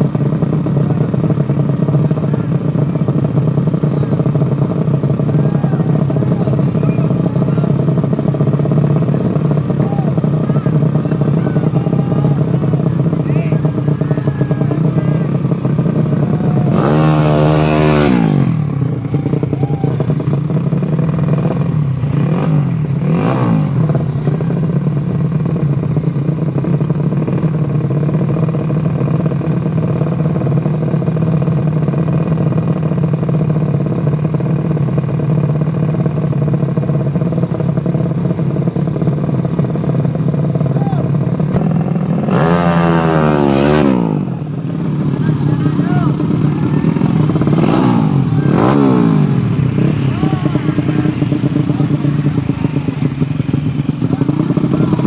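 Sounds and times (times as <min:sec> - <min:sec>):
motorcycle engines running: 0:00.0 - 0:55.0
motorcycle passing at speed: 0:41.5 - 0:55.0.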